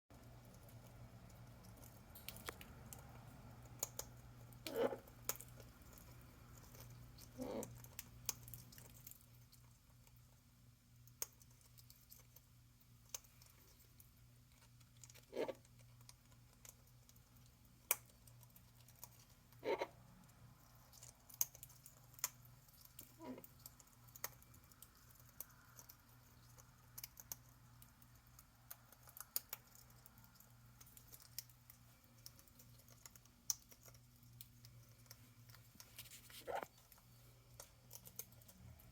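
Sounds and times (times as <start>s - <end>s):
parrot soft happy sounds: 0.2s - 5.3s, 6.4s - 8.6s, 15.2s - 15.6s, 19.5s - 20.6s, 22.8s - 24.1s, 36.0s - 36.8s.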